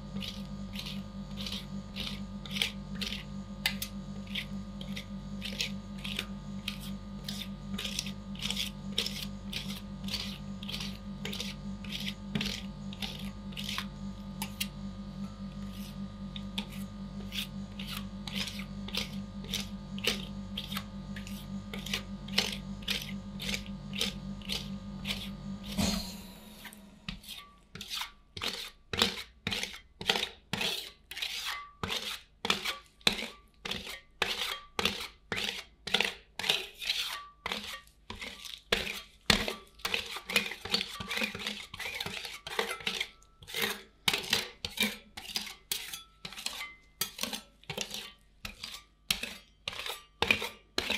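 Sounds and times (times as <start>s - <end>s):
low hum: 0.0s - 27.3s
metal spatulas scraping steel plate: 20.6s - 50.9s.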